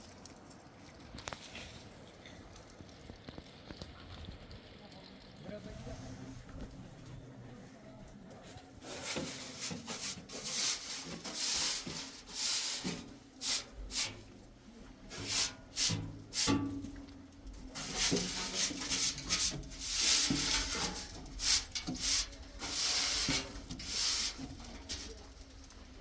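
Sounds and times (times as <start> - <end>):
rough scraping strokes: 8.8 - 14.4, 15.1 - 25.2.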